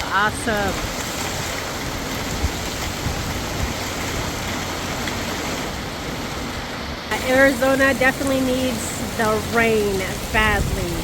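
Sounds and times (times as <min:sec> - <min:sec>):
heavy rain hiss: 0:00.0 - 0:11.0.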